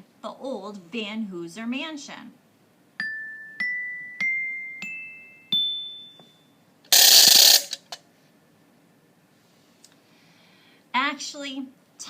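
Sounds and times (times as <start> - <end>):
glockenspiel notes: 3.0 - 6.6.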